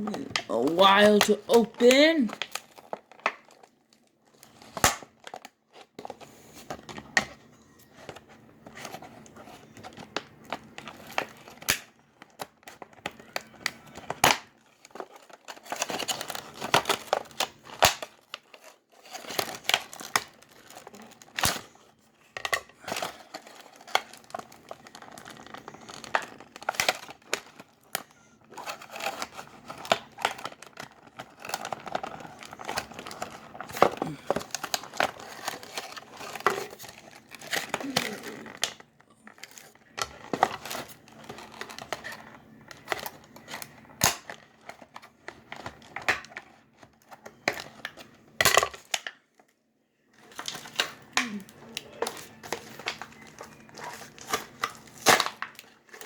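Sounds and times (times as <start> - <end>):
packaging crinkling and tearing: 0.0 - 56.0.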